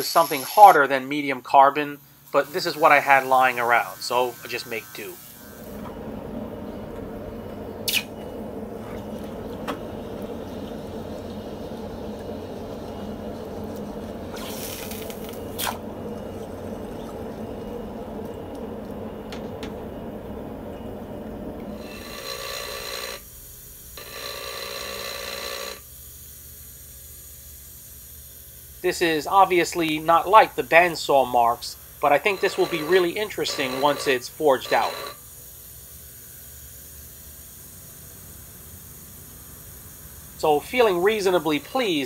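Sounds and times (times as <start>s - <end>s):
hissing grind of steel: 0.0s - 1.1s
power tool motor running: 2.3s - 26.0s, 32.1s - 35.3s.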